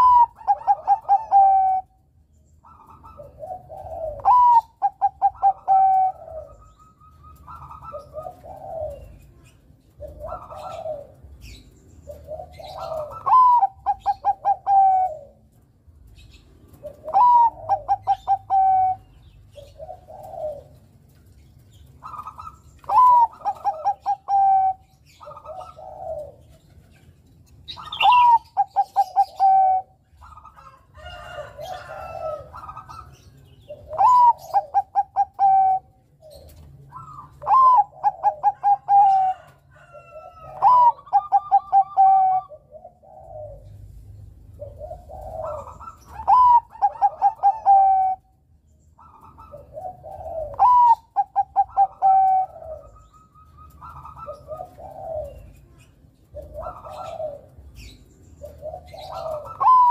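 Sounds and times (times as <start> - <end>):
dove cooing song: 0.0 - 59.9.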